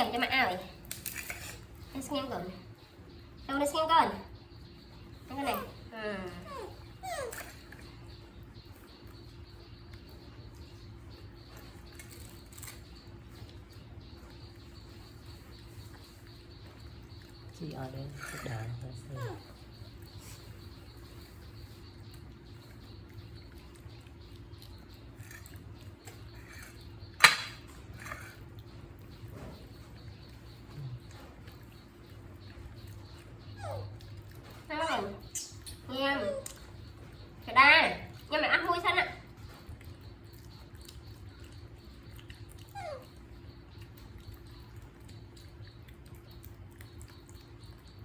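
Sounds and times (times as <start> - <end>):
faint scattered sounds: 0.0 - 48.0
faint steady hum: 0.0 - 48.0
baby monkey whimpering cry: 5.4 - 7.8, 33.5 - 34.0, 42.7 - 43.3.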